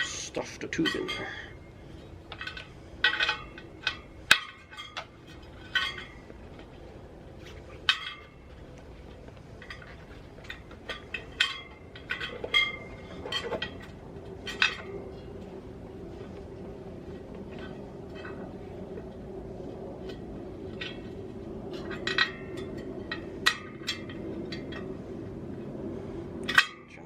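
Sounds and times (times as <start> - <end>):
metallic clinks on wheel rim: 7.4 - 8.6.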